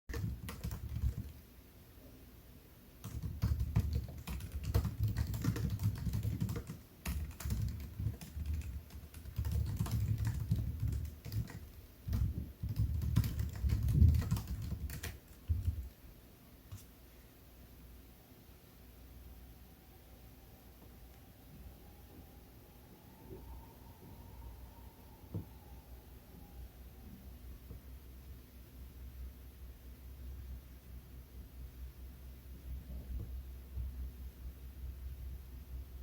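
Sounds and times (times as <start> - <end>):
laptop keyboard typing: 0.1 - 1.4, 3.0 - 15.9.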